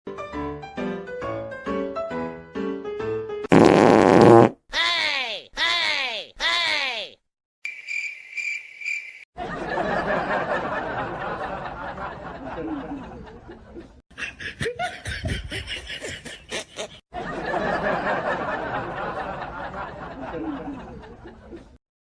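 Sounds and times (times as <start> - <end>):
people snickering and laughing: 9.4 - 21.8.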